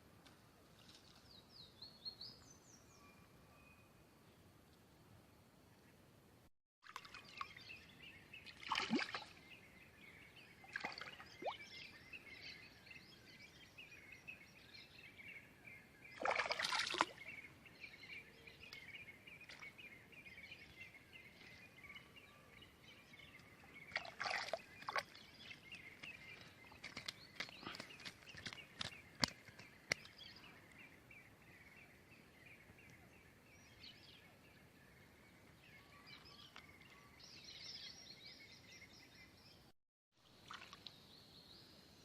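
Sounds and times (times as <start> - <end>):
songbirds singing and chattering: 7.0 - 39.7
water sloshing: 8.5 - 9.4.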